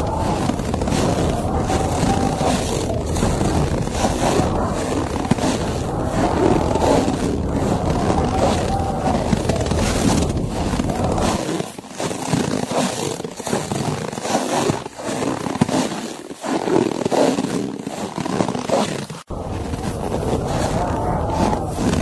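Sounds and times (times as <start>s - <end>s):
blizzard wind gusting: 0.0s - 11.4s, 19.3s - 22.0s.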